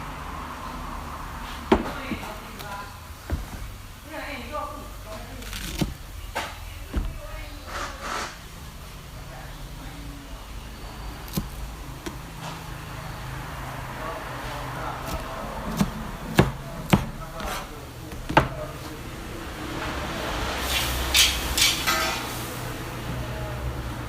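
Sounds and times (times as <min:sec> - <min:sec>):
utensils and cookware clacking: 0:20.6 - 0:22.5.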